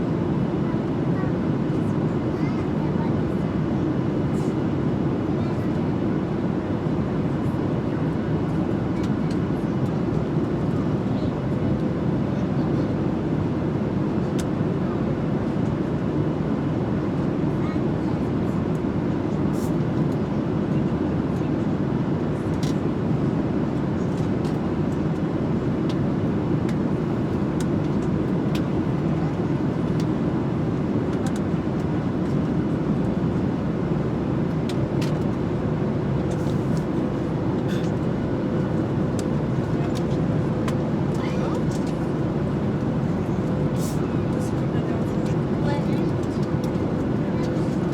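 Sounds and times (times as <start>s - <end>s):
airliner cabin rumble: 0.1s - 47.9s.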